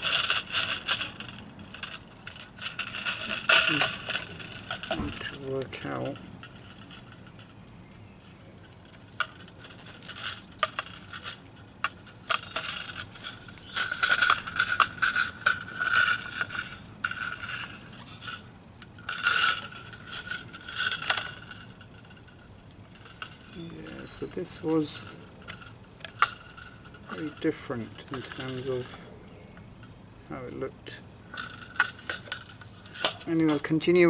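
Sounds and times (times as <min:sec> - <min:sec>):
plastic and metal parts clicking: 0:08.2 - 0:22.3.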